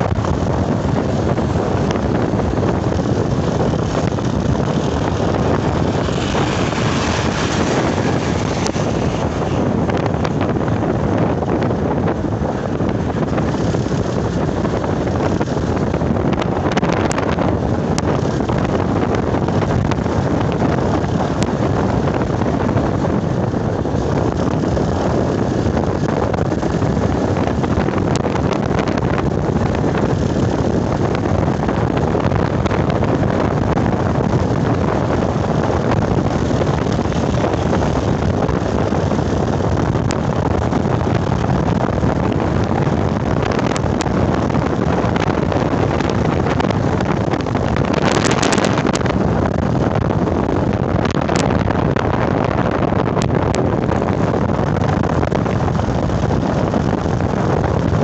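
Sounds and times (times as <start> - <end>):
wind on microphone: 0.0 - 58.0.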